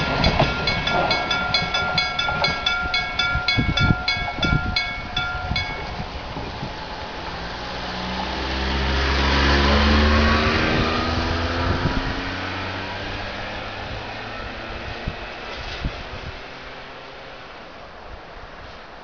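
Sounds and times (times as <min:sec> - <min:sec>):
vehicle accelerating past: 0:07.0 - 0:17.5.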